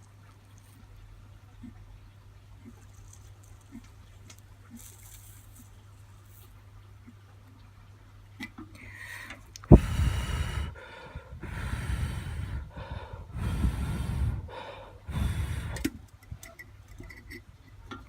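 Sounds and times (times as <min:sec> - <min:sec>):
heavy breathing close to microphone: 0:08.9 - 0:16.0.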